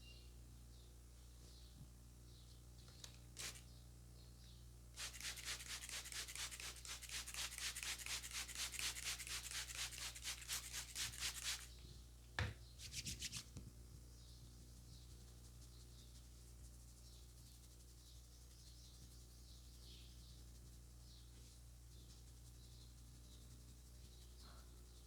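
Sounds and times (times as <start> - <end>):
hands rubbing hair and scalp: 5.0 - 11.7, 12.8 - 13.5.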